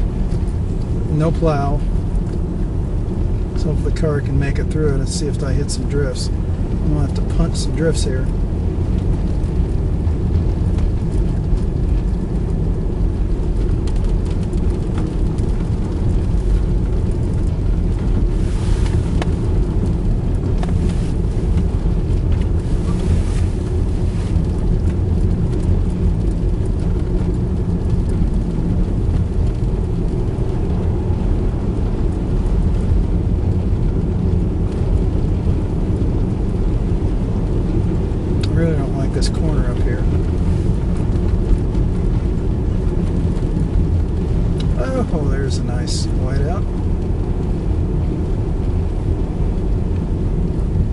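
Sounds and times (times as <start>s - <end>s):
car engine and tyre noise: 0.0s - 50.9s
hiss of snow and wind: 13.5s - 26.0s, 43.6s - 47.8s.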